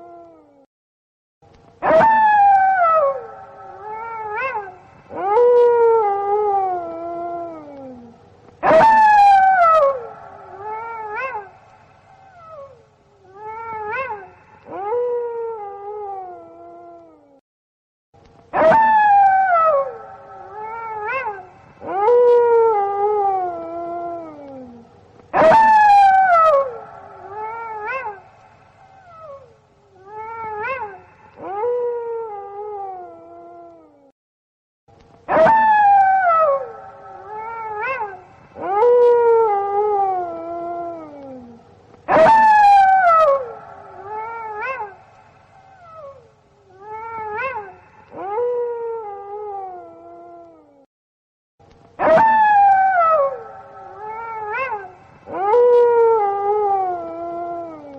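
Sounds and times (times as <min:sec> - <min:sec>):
wolves howling: 0:01.8 - 0:11.6, 0:18.5 - 0:28.4, 0:35.3 - 0:45.2, 0:45.8 - 0:50.7, 0:52.0 - 0:57.9.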